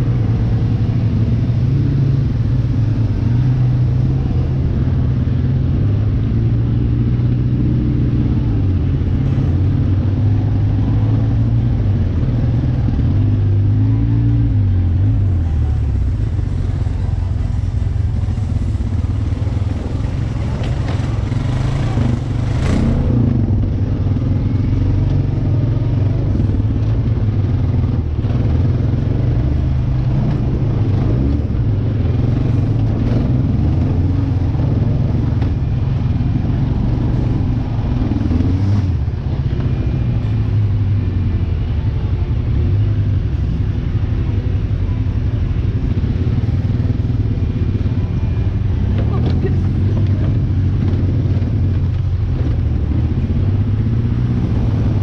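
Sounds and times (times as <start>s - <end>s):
off-road vehicle engine running: 0.0s - 55.0s.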